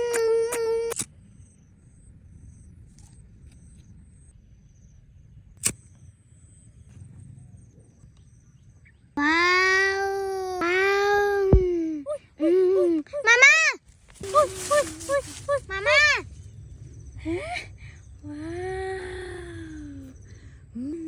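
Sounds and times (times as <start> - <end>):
sharp click: 5.6 - 6.0.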